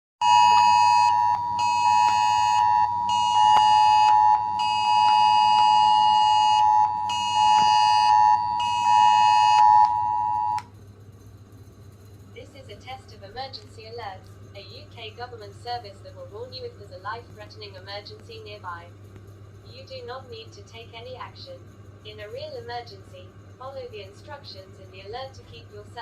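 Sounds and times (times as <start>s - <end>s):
phone emergency alert tone: 0.2s - 10.6s.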